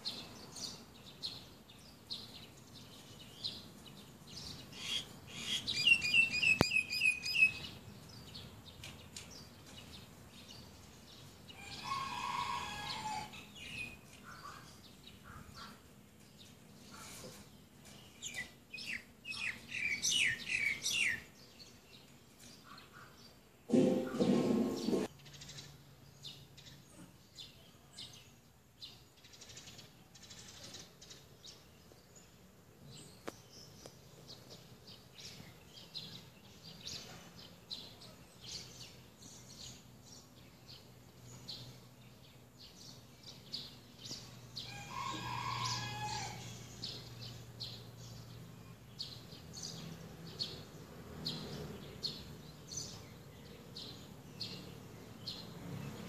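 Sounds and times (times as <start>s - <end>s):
birds chirping: 0.0s - 56.0s
loud bird call: 4.8s - 7.7s, 11.6s - 15.9s, 22.7s - 25.1s.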